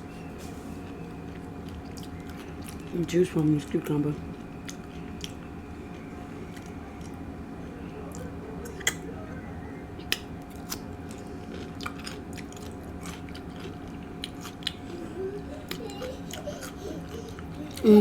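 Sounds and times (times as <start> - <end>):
person chewing food: 0.8 - 3.0, 4.2 - 7.2, 10.0 - 18.0.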